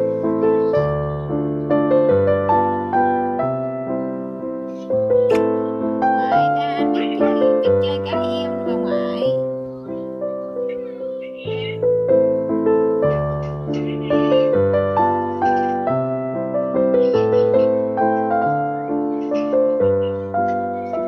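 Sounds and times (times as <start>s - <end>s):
slow piano melody: 0.0s - 21.0s.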